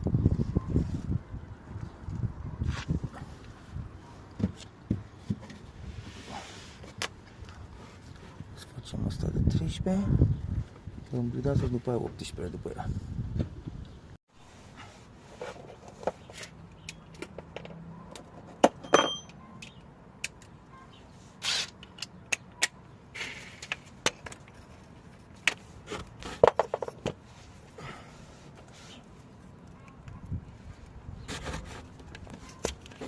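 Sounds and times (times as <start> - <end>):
socket wrench clinking on metal: 18.7 - 19.8.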